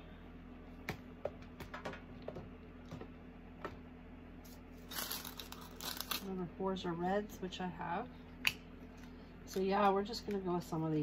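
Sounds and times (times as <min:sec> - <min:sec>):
small beads rattling out: 0:04.8 - 0:06.3.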